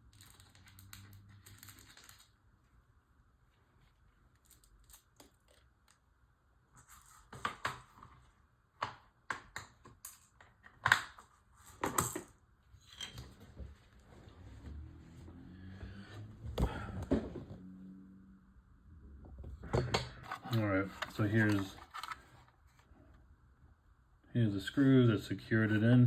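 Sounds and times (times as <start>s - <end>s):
plastic parts clicking and knocking: 19.6s - 22.5s.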